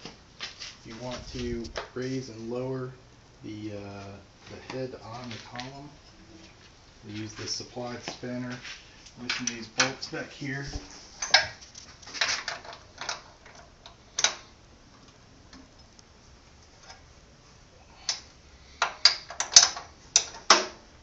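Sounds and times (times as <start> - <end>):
spanner clicking on metal bolts: 11.2 - 11.5, 12.2 - 14.4, 18.8 - 20.7.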